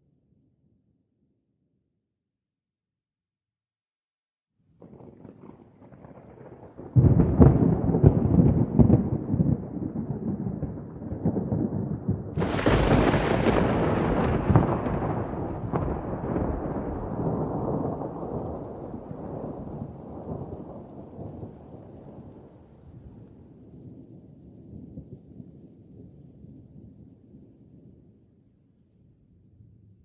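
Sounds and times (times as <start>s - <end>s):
thunder rumbling and cracking: 4.8s - 26.1s.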